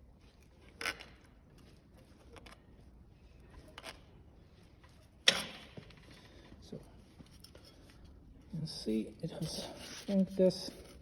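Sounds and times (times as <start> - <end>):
handling scrapes and rustles: 9.4 - 11.0.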